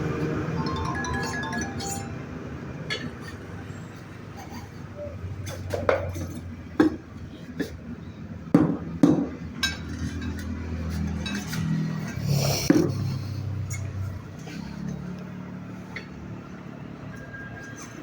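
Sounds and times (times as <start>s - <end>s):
metal tools clinking and knocking: 0.6s - 2.2s, 9.6s - 11.7s.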